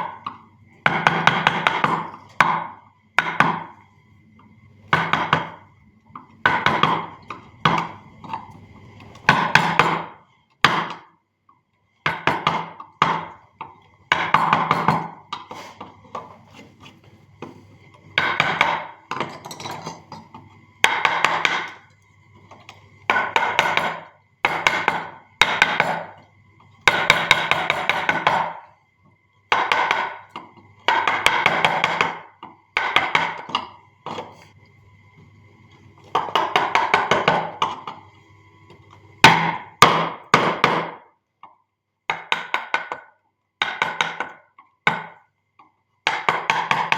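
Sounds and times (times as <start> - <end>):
mallet striking chisel on wood: 0.9 - 3.7, 5.0 - 5.6, 6.5 - 7.1, 10.7 - 11.0, 12.1 - 13.3, 14.1 - 15.4, 18.2 - 19.4, 20.8 - 21.8, 23.1 - 26.1, 26.9 - 28.6, 29.5 - 30.2, 30.9 - 34.2, 36.2 - 37.8, 39.3 - 41.0, 42.1 - 45.2, 46.0 - 46.9.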